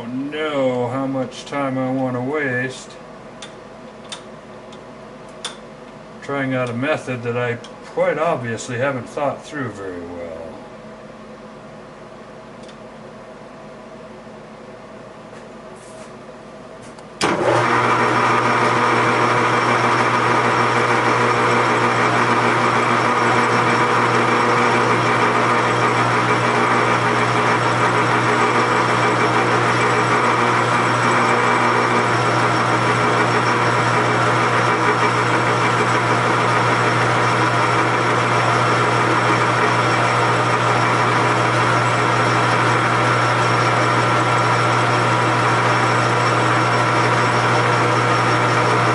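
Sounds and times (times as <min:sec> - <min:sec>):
lathe motor humming: 0:17.2 - 0:48.9.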